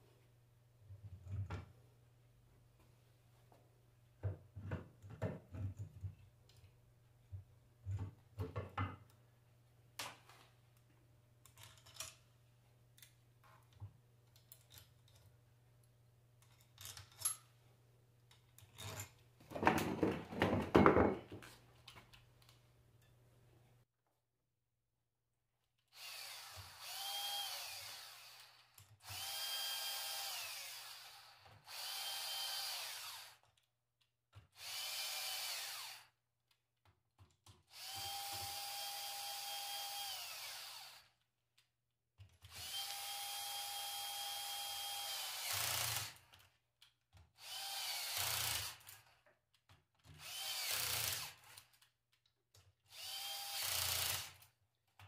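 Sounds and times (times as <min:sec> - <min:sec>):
power drill whining: 0:25.9 - 0:33.5, 0:34.6 - 0:36.1, 0:37.7 - 0:41.2, 0:42.4 - 0:46.4, 0:47.4 - 0:49.2, 0:50.2 - 0:51.7, 0:52.9 - 0:54.4.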